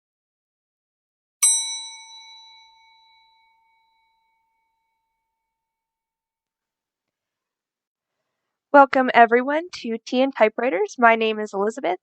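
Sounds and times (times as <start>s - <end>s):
bright bell ding: 1.4s - 5.8s.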